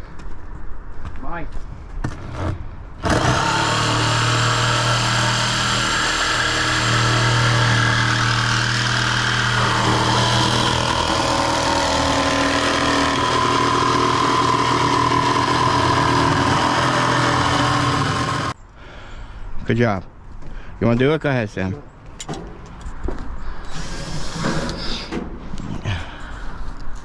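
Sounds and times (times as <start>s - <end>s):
power tool motor running: 3.0s - 18.6s.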